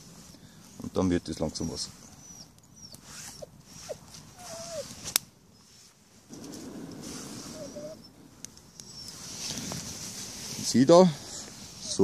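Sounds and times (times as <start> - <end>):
campfire crackling: 0.0 - 12.0
fire popping: 3.7 - 5.4, 6.2 - 11.8.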